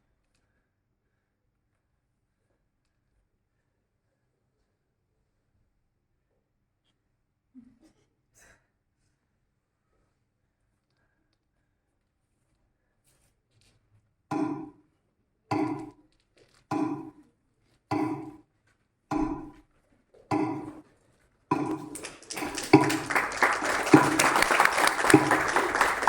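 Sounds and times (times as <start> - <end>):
audience applause: 21.5 - 26.0.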